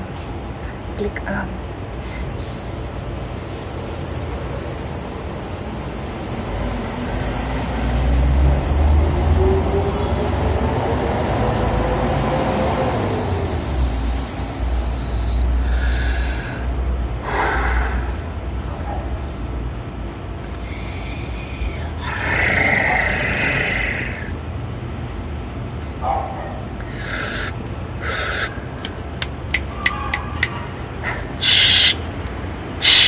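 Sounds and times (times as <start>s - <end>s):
low engine rumble: 0.0s - 22.1s
street sounds: 0.0s - 33.0s
air brake hiss: 2.0s - 19.4s, 20.6s - 24.3s, 26.8s - 32.1s, 32.8s - 33.0s.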